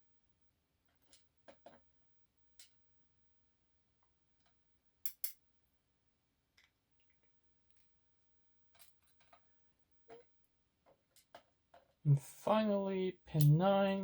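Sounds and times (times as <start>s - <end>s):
small metal lock parts clicking: 4.4s - 5.4s.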